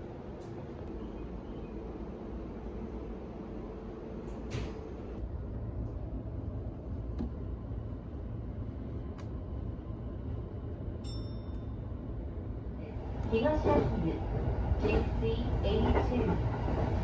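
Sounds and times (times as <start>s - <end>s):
train cabin rumble: 0.0s - 11.4s
short high ding: 11.0s - 11.8s.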